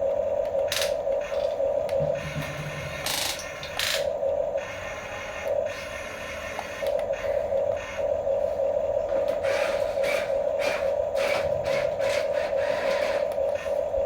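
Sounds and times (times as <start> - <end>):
toy electric motor whining: 2.2 - 8.0, 9.4 - 13.8.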